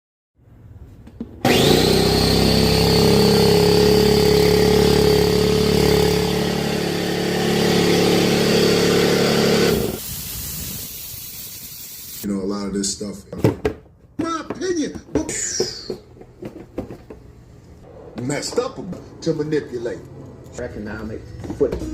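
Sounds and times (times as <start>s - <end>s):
air compressor running: 1.4s - 12.2s.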